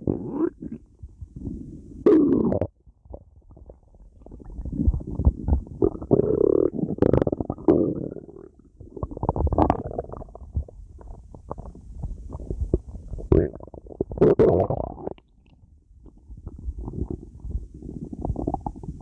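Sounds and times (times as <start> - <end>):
stomach gurgling and rumbling: 0.0 - 19.0.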